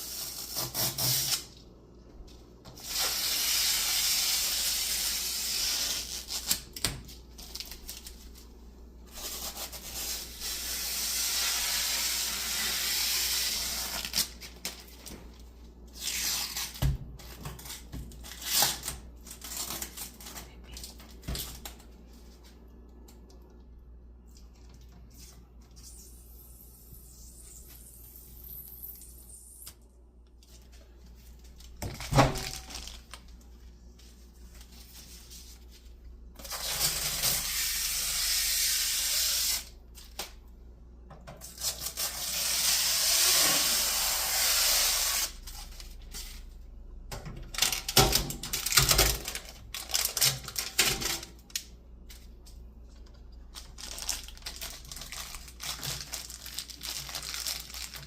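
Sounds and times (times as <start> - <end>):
plastic film peeling: 9.1 - 15.2, 31.6 - 33.4, 47.5 - 52.2, 53.5 - 58.0.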